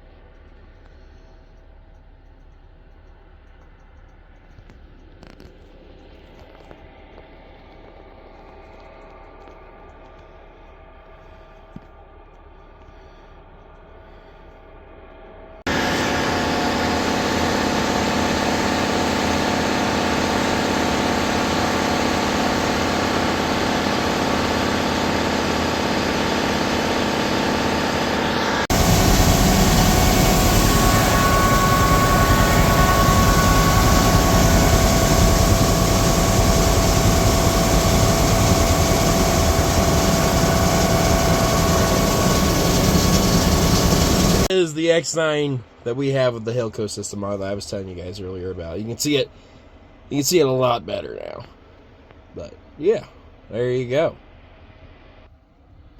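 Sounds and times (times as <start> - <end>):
heavy engine running: 4.4 - 44.5.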